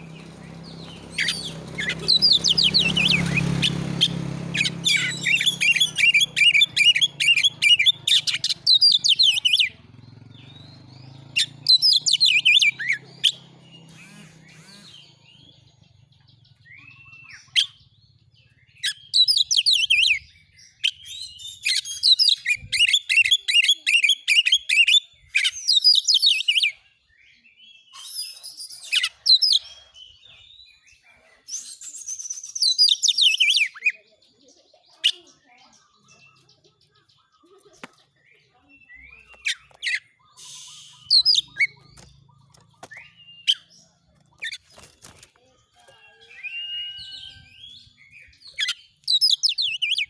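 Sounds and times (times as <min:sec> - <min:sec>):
magpie-robin singing whistled notes: 0:00.0 - 0:37.5, 0:38.1 - 0:44.6, 0:46.0 - 0:50.0
rising bird whistle: 0:00.6 - 0:09.8, 0:39.0 - 0:41.8, 0:46.0 - 0:50.0.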